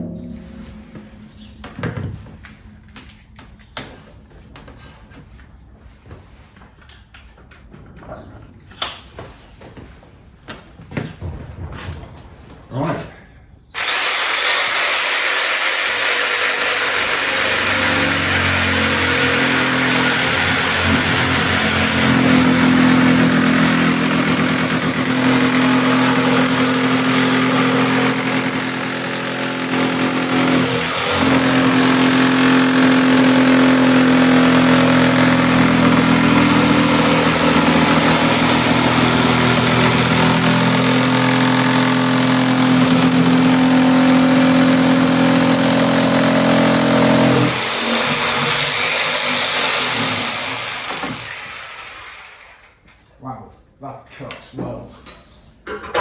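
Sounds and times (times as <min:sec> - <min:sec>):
jigsaw motor whine cutting: 0:13.8 - 0:52.8.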